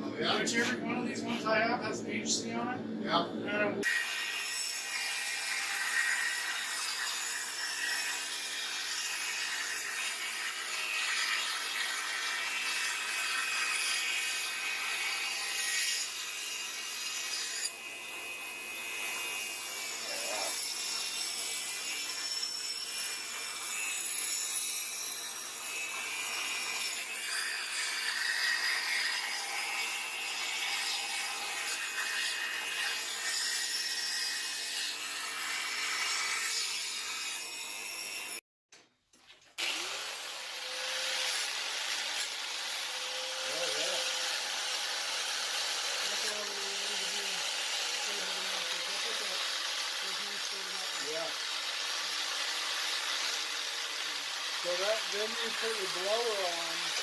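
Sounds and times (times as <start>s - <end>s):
abrasive tool rasping on metal: 40.8s - 57.0s.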